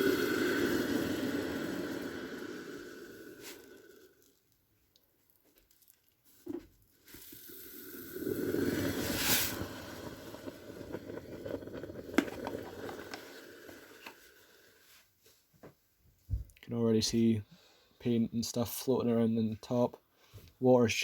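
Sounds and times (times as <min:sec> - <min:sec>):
fizzing bubbling hiss: 0:00.0 - 0:04.5, 0:07.0 - 0:14.9.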